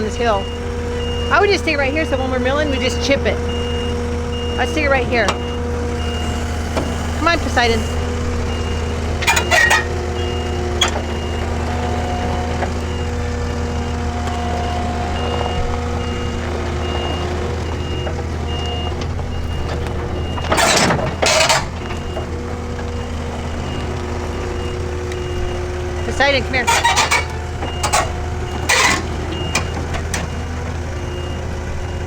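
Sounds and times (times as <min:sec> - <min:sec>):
backup alarm beeping: 0:00.0 - 0:32.0
skid steer engine running: 0:00.0 - 0:32.0
loud noisy bursts: 0:04.5 - 0:09.8
sharp metal clanks: 0:09.2 - 0:10.0, 0:26.6 - 0:29.7.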